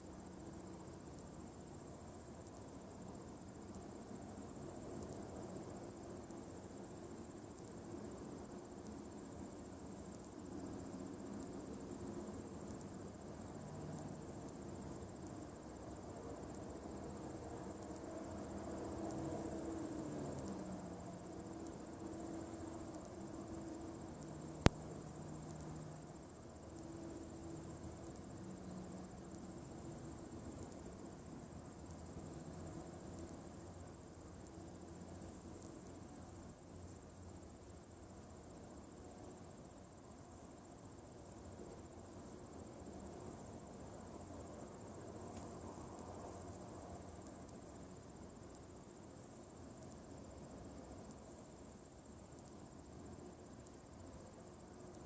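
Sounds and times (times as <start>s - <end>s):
insect trilling: 0.0s - 55.0s
low background hum: 0.0s - 55.0s.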